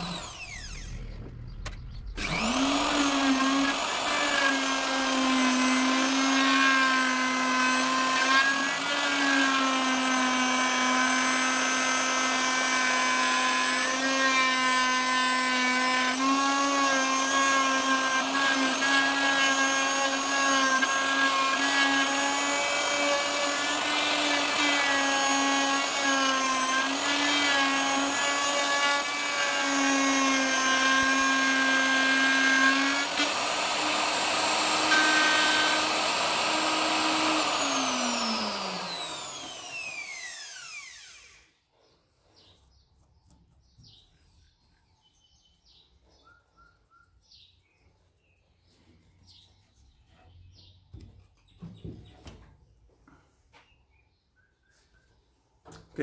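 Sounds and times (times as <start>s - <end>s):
electric router cutting wood: 0.0s - 41.6s.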